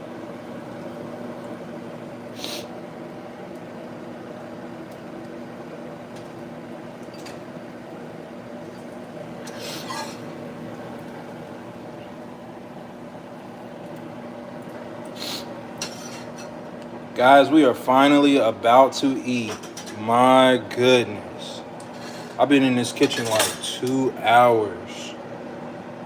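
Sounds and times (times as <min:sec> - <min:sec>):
appliance hum: 0:00.0 - 0:26.0
dishes clinking: 0:15.8 - 0:16.6, 0:23.0 - 0:23.7.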